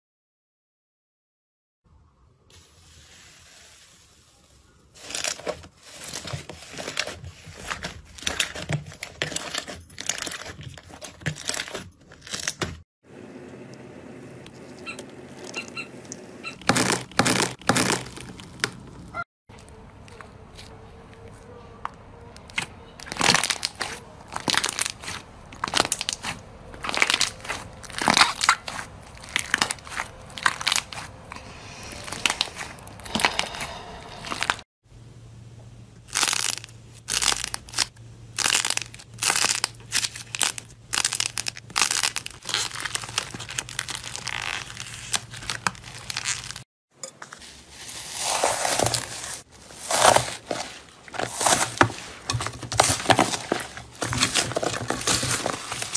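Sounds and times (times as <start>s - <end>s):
slime squeezed crackling: 22.4s - 33.5s.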